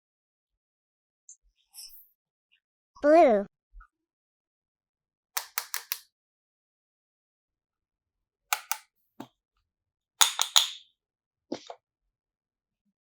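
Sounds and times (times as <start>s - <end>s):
slime clicking and popping: 10.2s - 10.8s.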